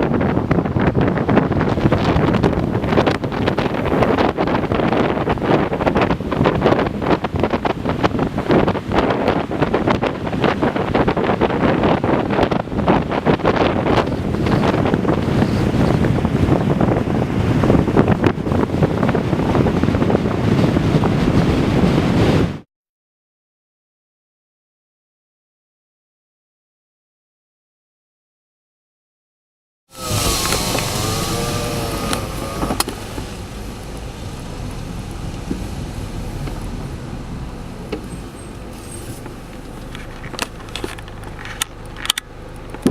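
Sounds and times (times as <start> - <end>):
wind buffeting microphone: 0.0 - 22.6, 30.0 - 42.9
wavering whistling tone: 29.9 - 39.2.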